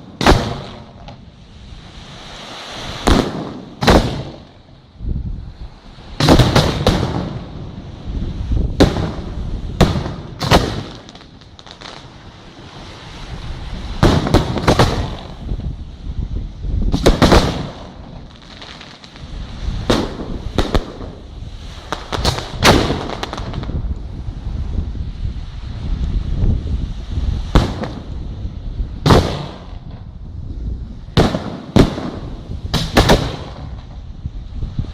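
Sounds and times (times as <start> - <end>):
firework shells bursting: 14.0 - 15.6, 16.9 - 23.8, 31.2 - 34.0.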